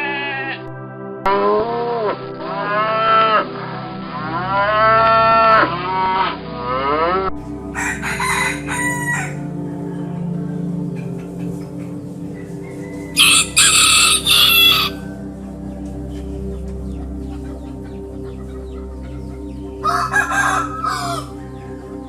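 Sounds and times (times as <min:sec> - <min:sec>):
chickens clucking: 0:10.4 - 0:15.0, 0:15.8 - 0:21.8.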